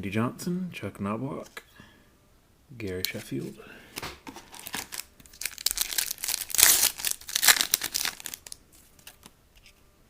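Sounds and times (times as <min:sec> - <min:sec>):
wrapper tearing and crinkling: 0:04.4 - 0:09.3.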